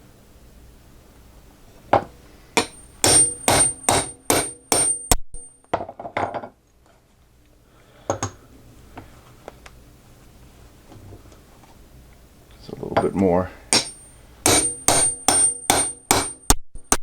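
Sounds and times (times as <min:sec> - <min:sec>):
high metallic ring: 0:02.6 - 0:05.7, 0:13.7 - 0:16.5.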